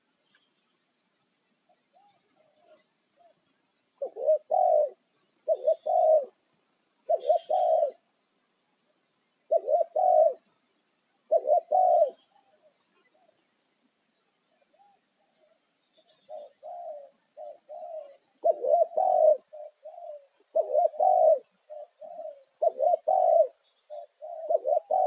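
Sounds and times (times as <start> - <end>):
dove cooing: 4.0 - 6.4, 7.1 - 8.0, 9.5 - 10.4, 11.3 - 13.3, 16.2 - 25.0.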